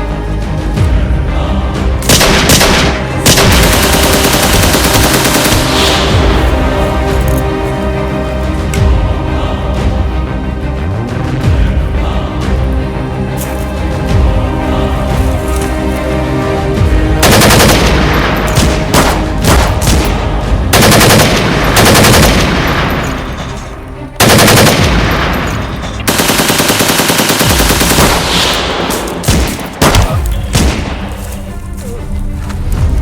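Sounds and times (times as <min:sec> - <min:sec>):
background music: 0:00.0 - 0:33.0
automatic gunfire: 0:02.1 - 0:05.8, 0:17.2 - 0:20.1, 0:20.8 - 0:23.0, 0:24.2 - 0:28.5.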